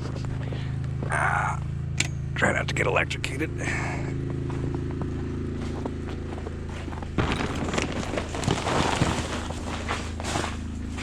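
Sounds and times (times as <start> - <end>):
diesel generator running: 0.0 - 11.0
footsteps crunching through snow: 4.2 - 11.0.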